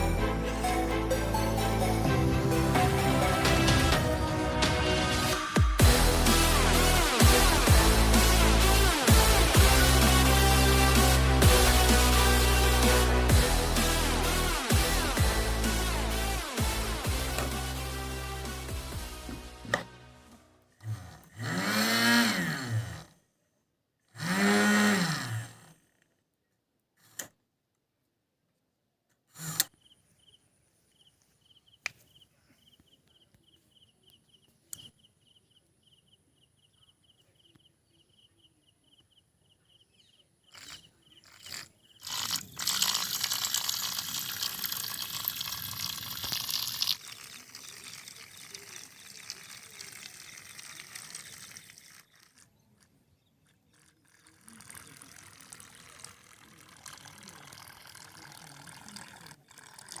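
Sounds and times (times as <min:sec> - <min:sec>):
water splashing and churning: 0:41.5 - 0:52.6, 0:53.5 - 1:00.0.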